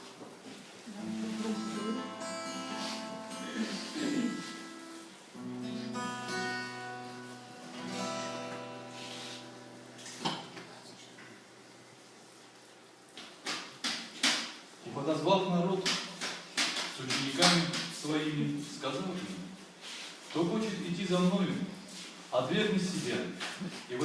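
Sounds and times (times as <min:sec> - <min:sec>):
acoustic guitar strumming chords: 0:00.9 - 0:10.8.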